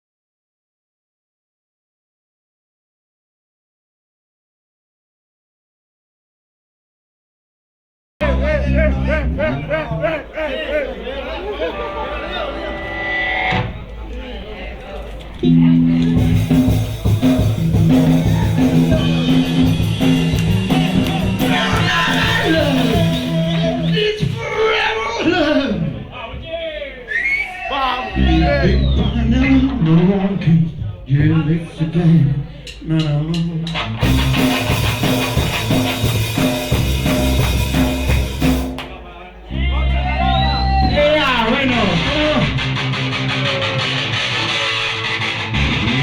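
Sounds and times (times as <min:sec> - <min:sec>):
punk rock band playing: 0:11.4 - 0:14.1, 0:15.4 - 0:24.5, 0:33.3 - 0:46.0.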